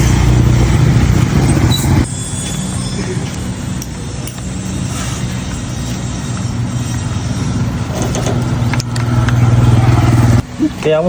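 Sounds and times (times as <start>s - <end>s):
brush cutter engine running: 6.3s - 11.0s.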